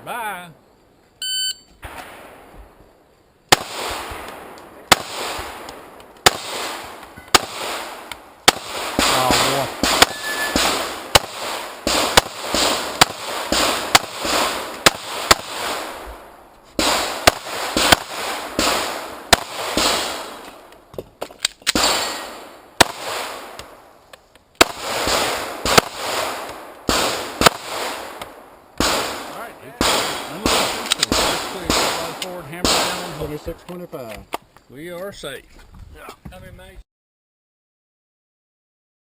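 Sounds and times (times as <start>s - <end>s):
pistol shots with echo: 3.5s - 16.1s, 16.8s - 20.4s, 21.7s - 23.9s, 24.6s - 33.4s.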